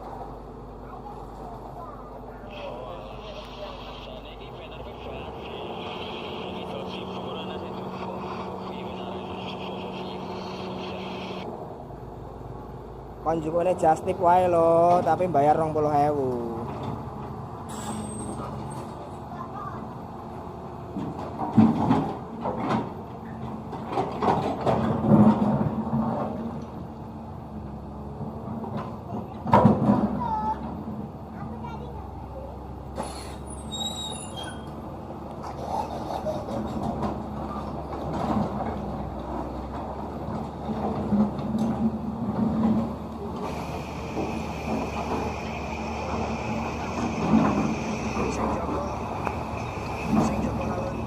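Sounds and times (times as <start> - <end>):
excavator engine running: 0.0 - 17.7, 34.7 - 51.0
steady high whine: 2.4 - 11.6, 43.4 - 51.0.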